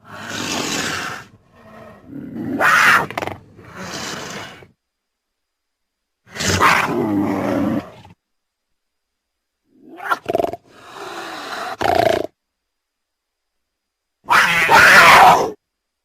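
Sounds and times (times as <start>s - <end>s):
cougar calls: 0.0s - 4.6s, 9.8s - 12.3s, 14.2s - 15.6s.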